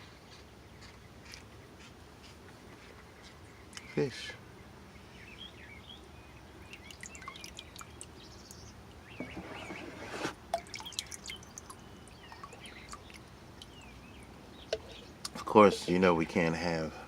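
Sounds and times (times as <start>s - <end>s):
small birds chirping: 0.0s - 17.0s
water dripping and trickling: 6.6s - 9.7s, 10.4s - 15.8s.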